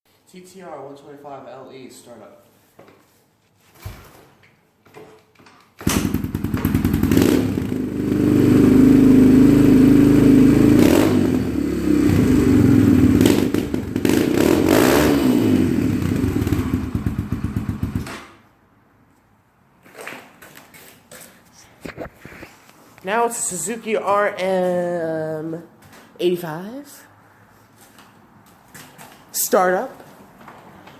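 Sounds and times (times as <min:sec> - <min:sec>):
motorcycle engine revving: 0:05.8 - 0:18.1.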